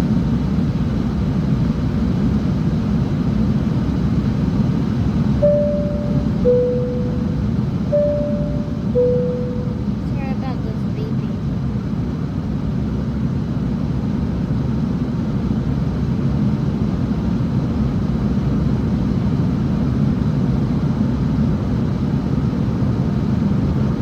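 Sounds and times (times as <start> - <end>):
airliner engine drone: 5.4 - 11.6.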